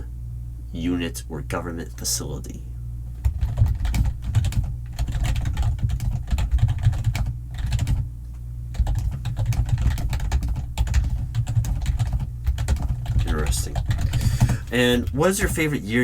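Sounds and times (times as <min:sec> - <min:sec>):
fast typing on a keyboard: 0:03.2 - 0:08.1, 0:08.7 - 0:15.6.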